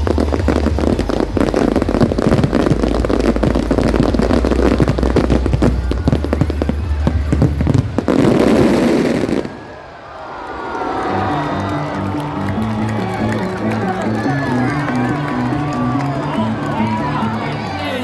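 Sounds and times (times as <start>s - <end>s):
music playing: 0.0s - 9.4s, 11.1s - 18.0s
fireworks crackling and popping: 0.0s - 9.8s, 10.4s - 18.0s.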